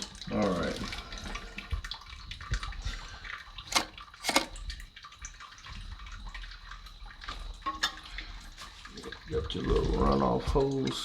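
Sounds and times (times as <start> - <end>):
water dripping in toilet tank: 0.0 - 11.0
plastic parts being handled: 3.7 - 4.6.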